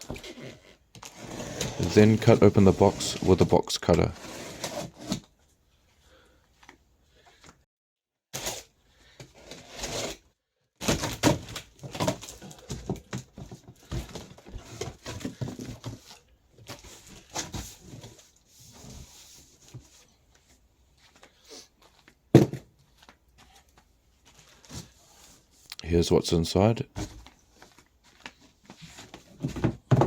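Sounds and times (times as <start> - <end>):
box cutter cutting cardboard: 4.1 - 5.3, 9.4 - 10.2.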